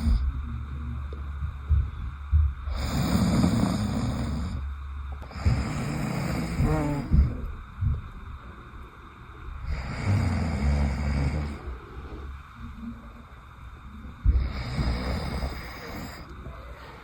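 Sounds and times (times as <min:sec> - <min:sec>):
person snoring: 0:00.0 - 0:00.3, 0:02.7 - 0:07.5, 0:09.6 - 0:12.3, 0:14.2 - 0:16.3
low thumps: 0:00.0 - 0:03.4, 0:06.6 - 0:08.5.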